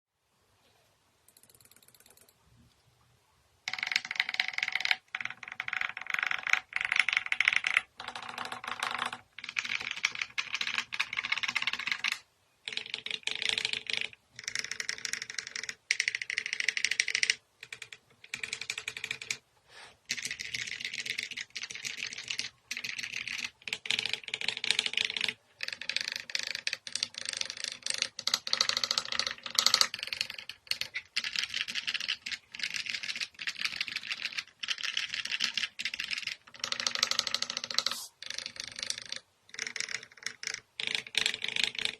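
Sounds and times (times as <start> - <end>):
typing on mechanical keyboard: 1.3 - 2.4, 3.7 - 19.4, 20.0 - 41.9.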